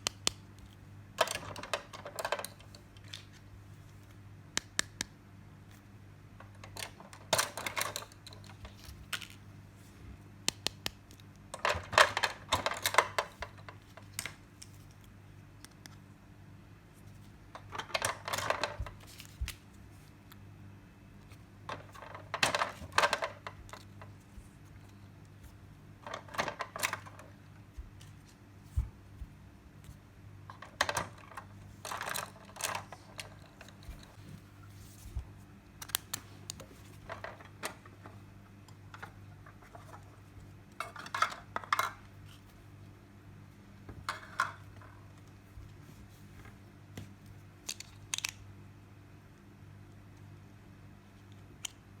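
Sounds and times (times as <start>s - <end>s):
faint steady hum: 0.0s - 52.0s
plastic toy pieces clicking: 47.7s - 48.4s.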